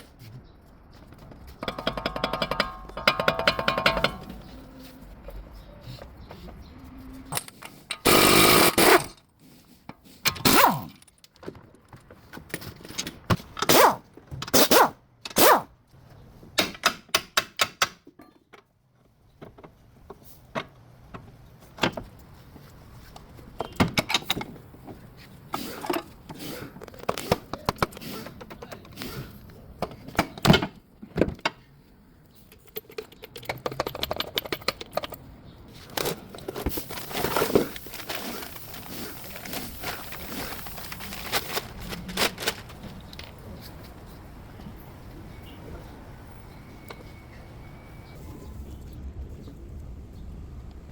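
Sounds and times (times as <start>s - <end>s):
repair tool bursts and knocks: 1.6s - 4.4s, 7.9s - 9.2s.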